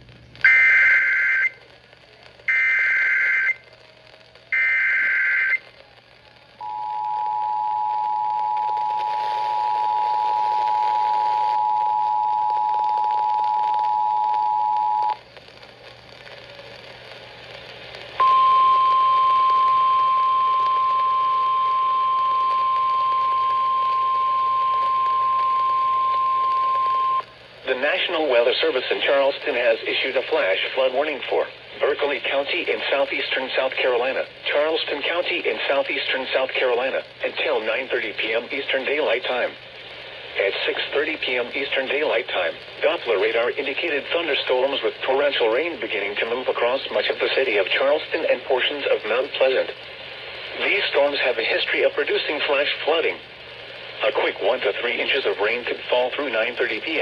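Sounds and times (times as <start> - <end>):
two-tone attention signal: 4.6 - 5.6, 18.2 - 27.2
steady single warning tone: 18.2 - 27.3.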